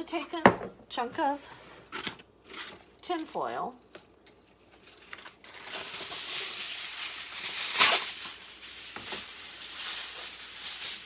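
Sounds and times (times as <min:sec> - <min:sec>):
aluminium foil crinkling and tearing: 0:02.6 - 0:11.0.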